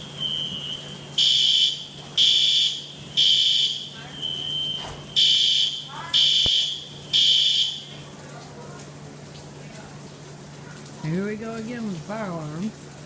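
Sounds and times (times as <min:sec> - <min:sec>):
fire alarm blasts: 0:00.0 - 0:08.1.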